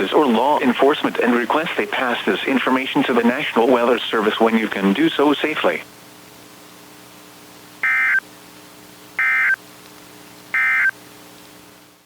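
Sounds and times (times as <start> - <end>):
faint steady hum: 0.0 - 12.0
digital data tone blips: 7.8 - 8.2, 9.2 - 9.6, 10.6 - 10.9.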